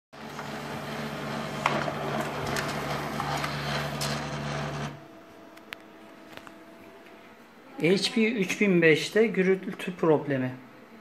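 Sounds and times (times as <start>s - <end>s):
printer humming: 0.2s - 10.2s
printer clicking and rattling: 0.3s - 5.0s.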